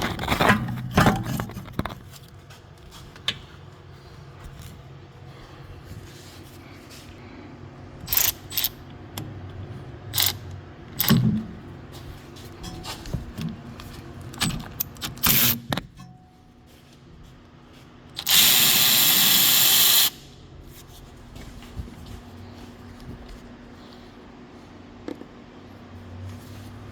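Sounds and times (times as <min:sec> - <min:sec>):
power tool running: 0:18.2 - 0:20.3.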